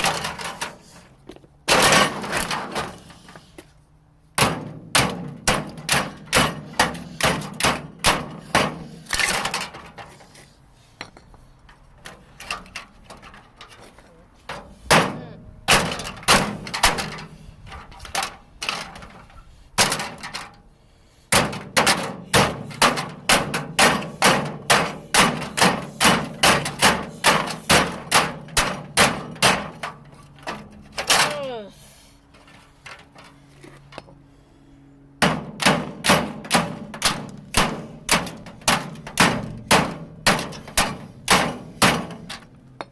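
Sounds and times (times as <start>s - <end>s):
hammer striking a microwave oven: 35.2s - 42.2s.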